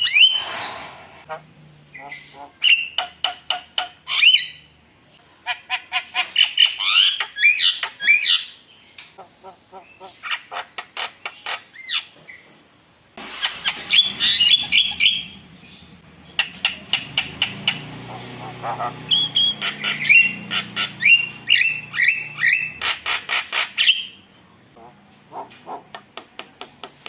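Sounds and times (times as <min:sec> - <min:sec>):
bird song with clicks and whistles: 0:02.6 - 0:04.7, 0:13.7 - 0:15.4, 0:16.4 - 0:17.8, 0:19.1 - 0:22.8, 0:25.3 - 0:27.0.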